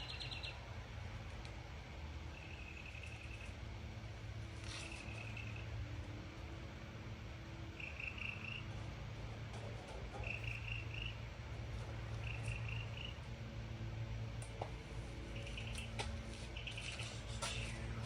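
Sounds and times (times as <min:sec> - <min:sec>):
steady low hum: 0:00.0 - 0:18.0
frog trilling: 0:02.3 - 0:03.6, 0:04.6 - 0:05.7, 0:07.8 - 0:08.7.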